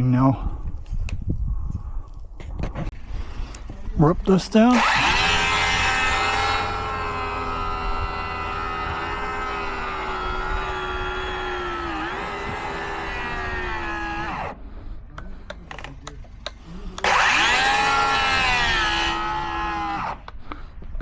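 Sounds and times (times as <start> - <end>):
power saw cutting wood: 4.5 - 14.6, 16.4 - 20.3.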